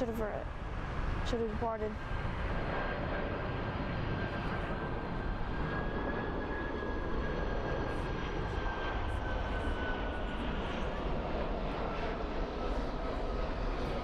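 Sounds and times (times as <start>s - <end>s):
jet engines approaching: 0.0s - 14.0s.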